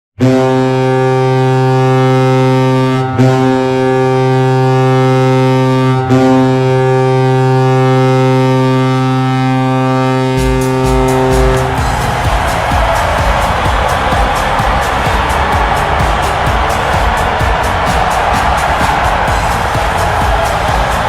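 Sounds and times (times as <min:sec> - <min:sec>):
hockey goal horn blast: 0:00.2 - 0:21.0
music with heavy beat: 0:10.4 - 0:21.0.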